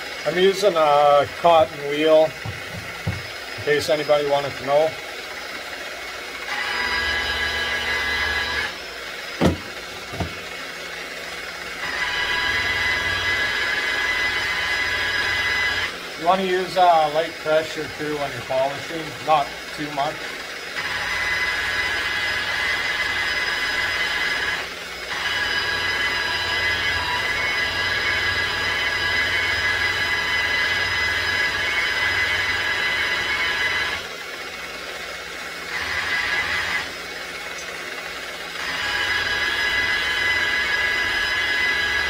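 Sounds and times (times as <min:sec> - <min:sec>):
power buffer whining: 0:00.0 - 0:42.0
sharp knock: 0:09.4 - 0:10.3.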